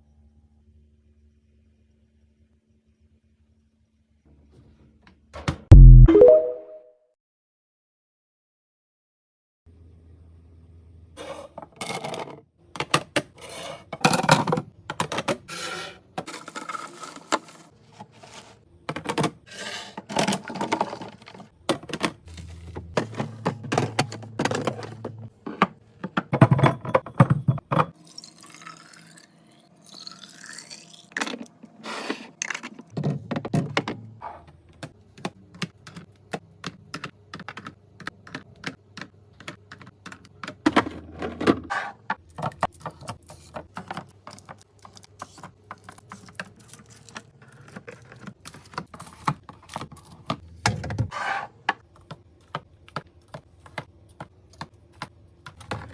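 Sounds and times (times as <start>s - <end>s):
plastic containers clicking and knocking: 14.0s - 15.5s, 18.8s - 19.4s, 20.1s - 22.3s, 34.7s - 46.6s.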